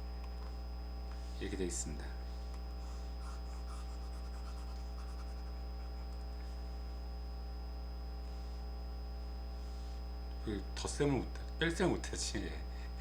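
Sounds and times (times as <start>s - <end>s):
low electrical hum: 0.0s - 13.0s
thin high whine: 0.0s - 13.0s
faint scratching of writing: 2.8s - 6.4s.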